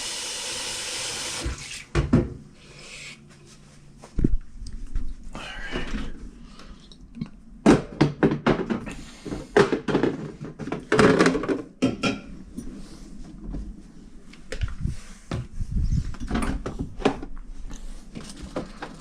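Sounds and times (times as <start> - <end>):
household items clattering: 7.7 - 11.8.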